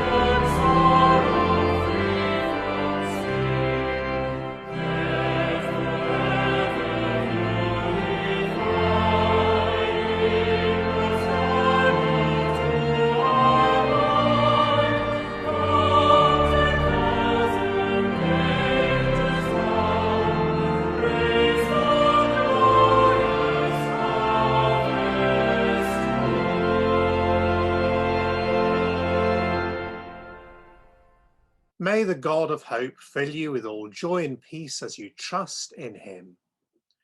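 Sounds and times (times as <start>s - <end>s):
voices singing a hymn: 0.0s - 30.0s.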